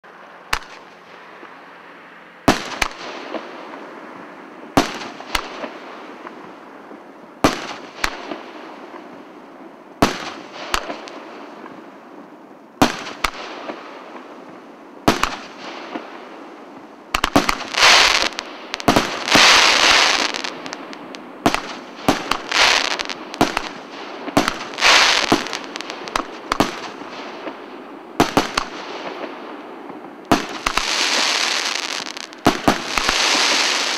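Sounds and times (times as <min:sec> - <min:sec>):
crackling firework bursts: 0:00.0 - 0:01.8, 0:02.5 - 0:06.6, 0:07.4 - 0:09.4, 0:10.0 - 0:11.9, 0:12.8 - 0:33.9
fireworks firing: 0:00.4 - 0:01.6, 0:02.4 - 0:03.9, 0:04.7 - 0:06.6, 0:07.4 - 0:09.4, 0:10.0 - 0:11.9, 0:12.8 - 0:33.9.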